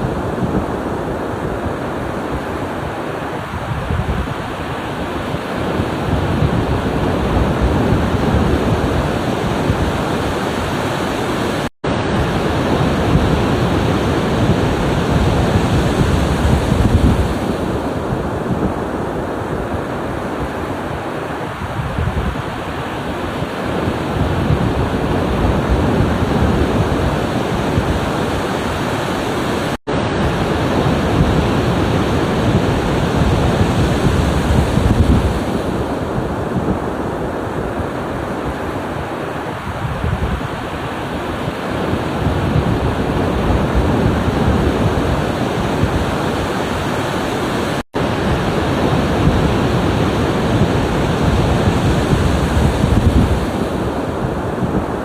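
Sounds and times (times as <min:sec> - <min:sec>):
ocean waves breaking: 0:00.0 - 0:55.0.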